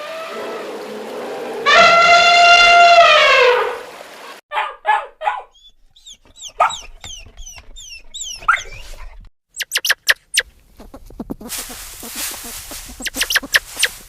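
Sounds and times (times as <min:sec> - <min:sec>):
high falling peeps: 0:09.6 - 0:14.0
short harsh calls: 0:09.6 - 0:14.0
held animal call: 0:10.8 - 0:14.0.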